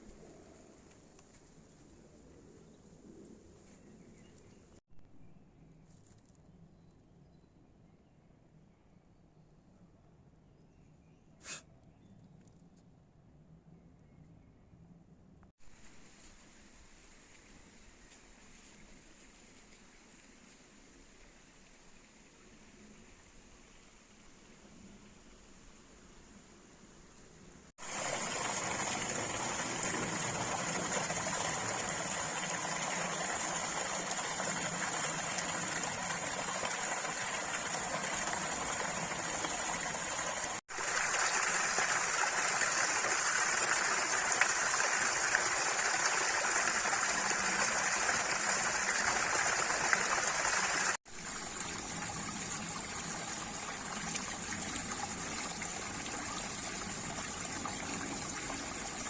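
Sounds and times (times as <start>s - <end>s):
stream flowing: 27.8s - 59.0s.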